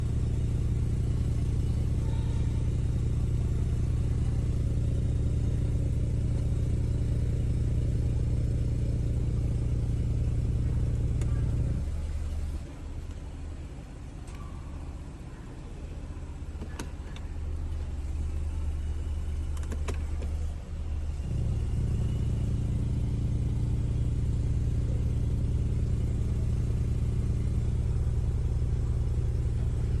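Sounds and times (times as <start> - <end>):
car engine running: 0.0 - 30.0
sharp clicks: 19.5 - 20.4.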